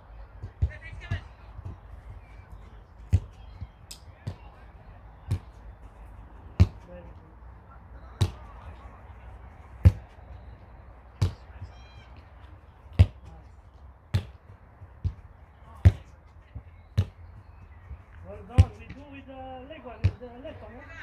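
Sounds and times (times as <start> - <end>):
football kick thuds: 0.4 - 4.6, 5.2 - 5.8, 6.5 - 7.1, 8.1 - 8.7, 9.8 - 10.5, 11.2 - 12.3, 12.9 - 19.1, 20.0 - 20.4.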